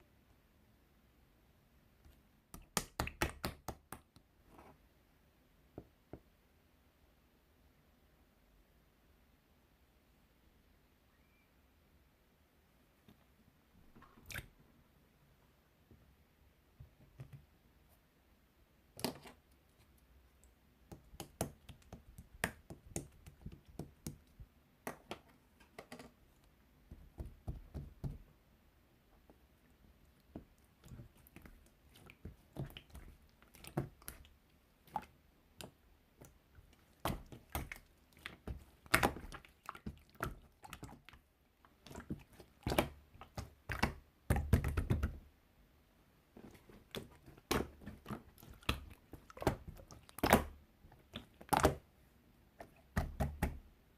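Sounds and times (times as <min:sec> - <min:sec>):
slime squishing: 0:30.0 - 0:45.2, 0:46.4 - 0:51.9, 0:52.6 - 0:53.6.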